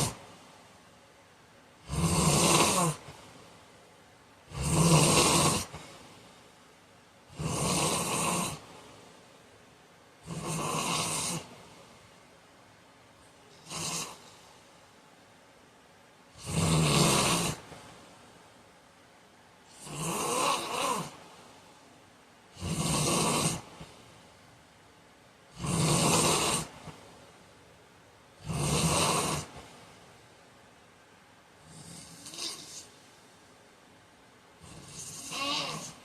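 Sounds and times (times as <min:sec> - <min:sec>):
man snoring: 0:00.0 - 0:00.2, 0:01.8 - 0:03.2, 0:04.5 - 0:05.9, 0:07.3 - 0:08.7, 0:10.2 - 0:11.6, 0:13.6 - 0:14.4, 0:16.4 - 0:17.8, 0:19.7 - 0:21.2, 0:22.5 - 0:23.8, 0:25.5 - 0:26.9, 0:28.4 - 0:29.6, 0:31.6 - 0:32.9, 0:34.6 - 0:36.0.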